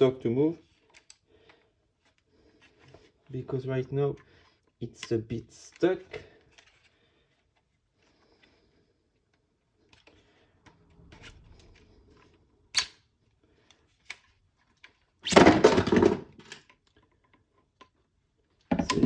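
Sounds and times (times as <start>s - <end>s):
hard plastic parts handled: 13.7s - 18.0s, 18.6s - 19.0s.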